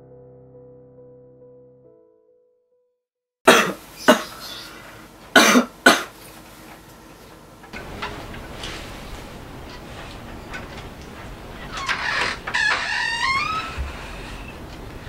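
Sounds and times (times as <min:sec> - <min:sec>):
soft piano music: 0:00.0 - 0:02.9, 0:07.8 - 0:11.6
person coughing hard: 0:03.5 - 0:04.4, 0:05.4 - 0:06.1.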